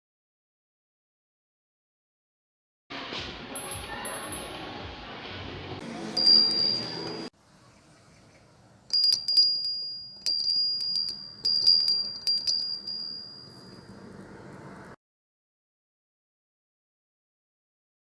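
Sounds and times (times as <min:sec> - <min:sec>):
hand bell dinging: 0:03.6 - 0:04.7, 0:06.2 - 0:07.3, 0:08.9 - 0:14.2.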